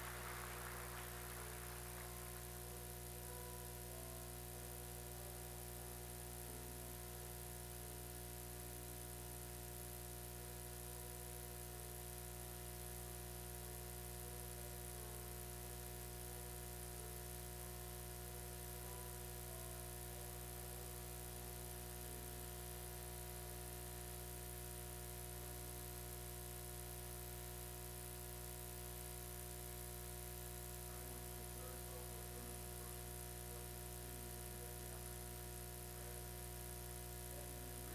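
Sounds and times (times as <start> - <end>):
electrical hum: 0.0 - 7.7
faint slow music: 0.0 - 9.4, 10.0 - 24.4.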